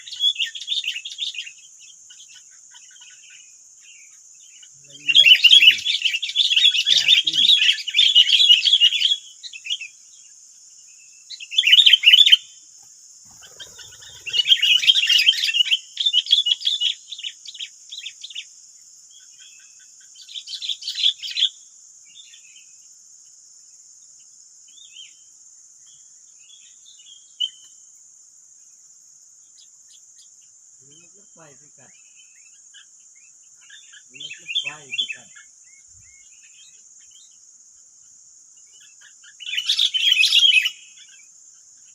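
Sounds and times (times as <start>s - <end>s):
bulbuls chattering and calling: 0.0s - 10.0s, 11.3s - 21.5s, 29.5s - 37.4s, 38.0s - 41.9s
high insect drone: 0.0s - 41.9s.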